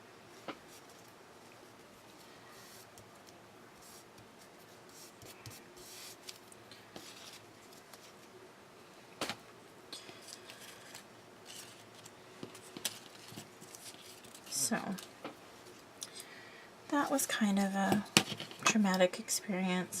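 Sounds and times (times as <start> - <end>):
paper rustling and scraping: 4.9 - 8.3, 10.2 - 15.1.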